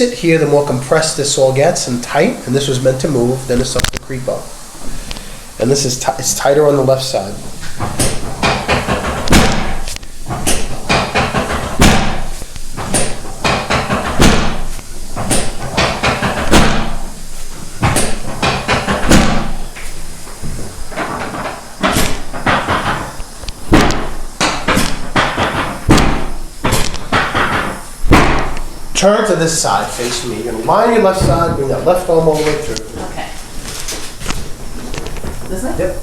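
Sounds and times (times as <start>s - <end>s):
sharp thuds of chiropractic thrusts: 7.6s - 28.9s.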